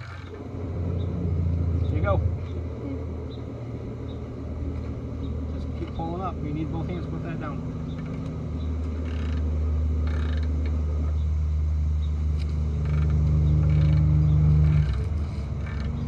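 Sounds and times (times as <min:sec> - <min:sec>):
truck engine braking drone: 0:00.0 - 0:16.0.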